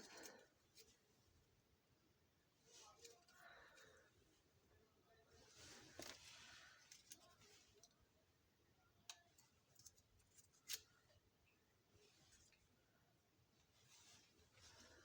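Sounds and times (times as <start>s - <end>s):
faint rustling: 13.6s - 15.0s.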